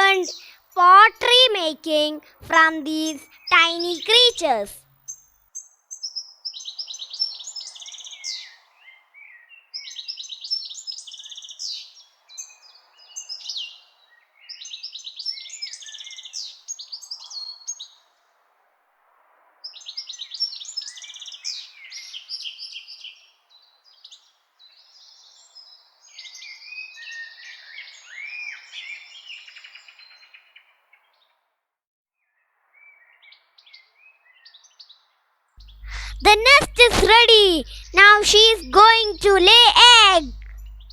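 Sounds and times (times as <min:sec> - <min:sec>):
faint steady background noise: 0:00.0 - 0:05.4.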